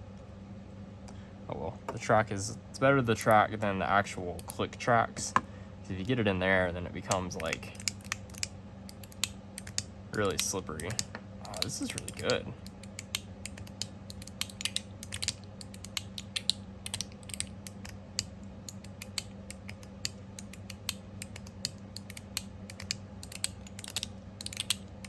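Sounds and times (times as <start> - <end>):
metal fidget slider clicking: 18.7 - 24.8.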